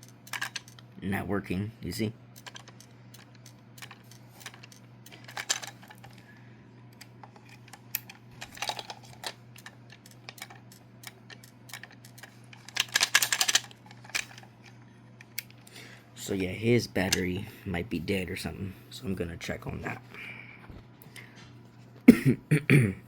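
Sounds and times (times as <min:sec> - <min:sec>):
clicks and taps of toy handling: 0:00.0 - 0:00.8, 0:02.4 - 0:06.2, 0:07.0 - 0:14.5
faint hum: 0:00.0 - 0:23.0.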